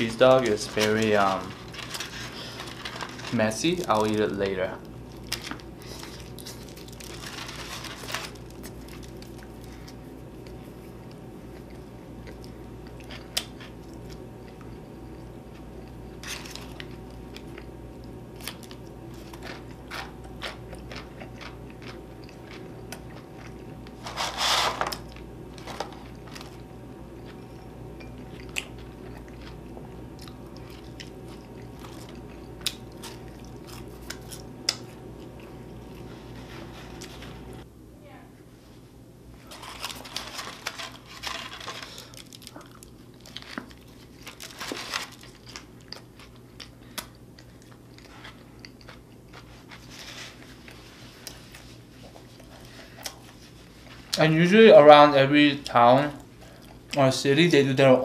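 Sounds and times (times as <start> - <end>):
steady low hum: 0.0 - 58.0
person chewing and biting food: 8.3 - 23.9, 27.2 - 36.1.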